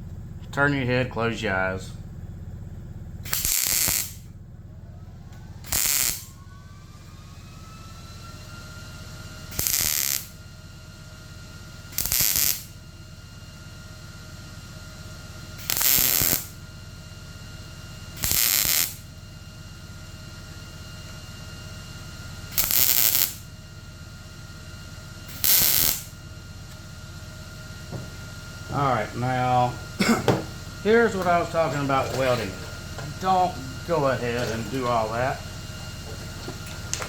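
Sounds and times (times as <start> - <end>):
steady low hum: 0.0 - 37.0
welding arc crackling: 3.2 - 4.3, 5.6 - 6.4, 9.5 - 10.4, 11.8 - 12.8, 15.6 - 16.6, 18.2 - 19.1, 22.5 - 23.5, 25.2 - 27.0, 27.6 - 37.0.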